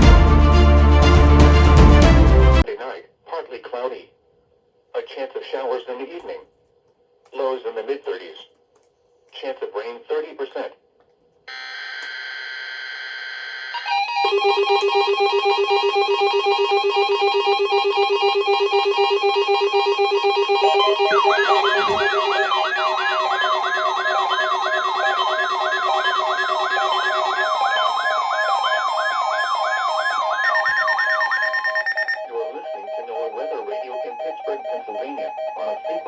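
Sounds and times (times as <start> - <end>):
fast warbling siren-like alert: 13.5 - 36.0
overlapping beeping alert tones: 15.9 - 32.2
high alert tone: 17.3 - 32.2.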